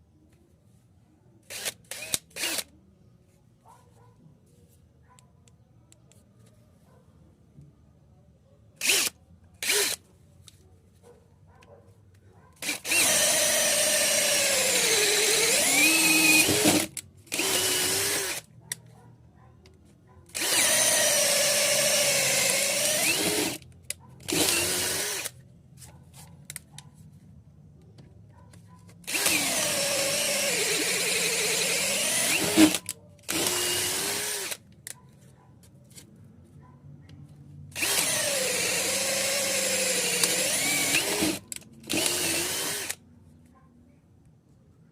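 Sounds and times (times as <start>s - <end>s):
cordless drill motor whining: 1.4s - 2.7s, 8.8s - 10.0s, 12.6s - 18.5s, 20.3s - 23.6s, 24.2s - 25.3s, 29.0s - 34.6s, 37.7s - 43.0s.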